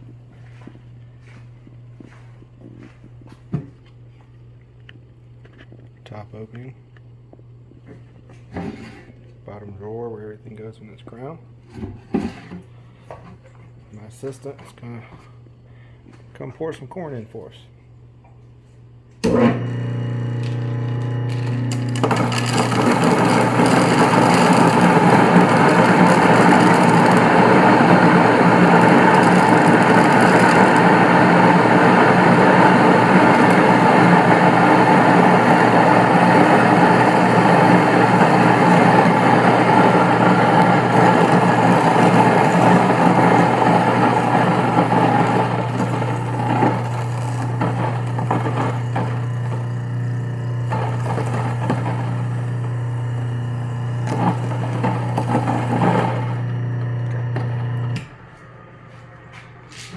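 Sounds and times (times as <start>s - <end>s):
stone mill grinding corn: 19.2s - 58.2s
electric motor humming: 19.2s - 58.3s.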